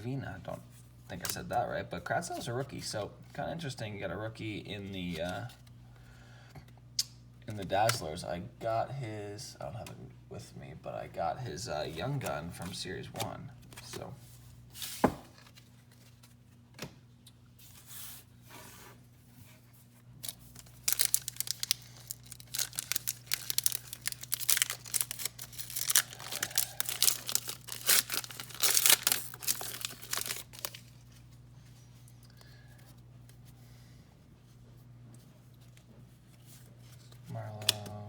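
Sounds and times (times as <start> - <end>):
low steady hum: 0.0 - 38.0
foil wrapper tearing and crinkling: 20.2 - 31.1.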